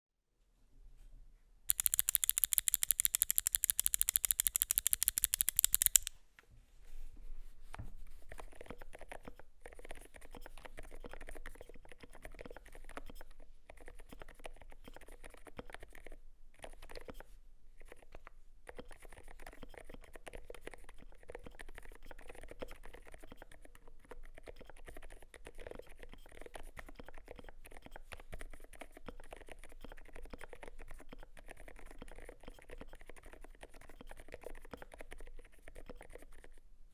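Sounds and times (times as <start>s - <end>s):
keyboard typing: 1.7s - 6.1s.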